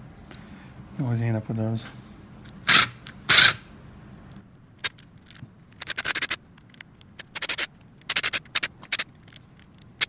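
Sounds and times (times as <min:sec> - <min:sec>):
hands scraping and clicking parts: 0:02.5 - 0:03.6, 0:04.3 - 0:10.0.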